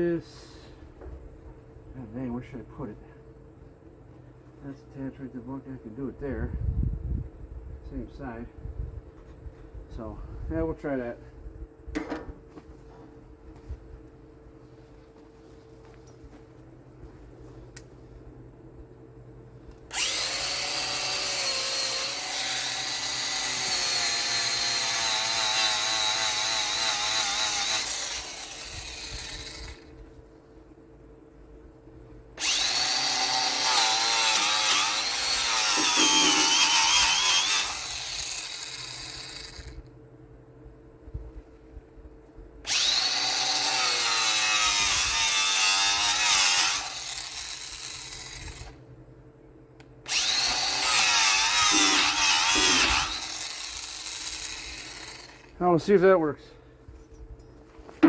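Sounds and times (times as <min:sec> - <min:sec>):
angle grinder on steel: 0:19.9 - 0:30.0, 0:32.4 - 0:39.8, 0:42.7 - 0:48.8, 0:50.1 - 0:55.6.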